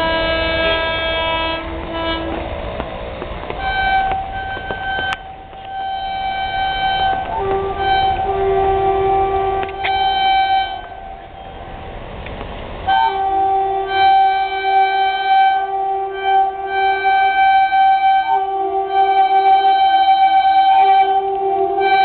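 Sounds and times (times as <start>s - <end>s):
locomotive horn blasts: 0.0s - 11.9s, 12.9s - 22.0s
train rumbling: 0.0s - 22.0s.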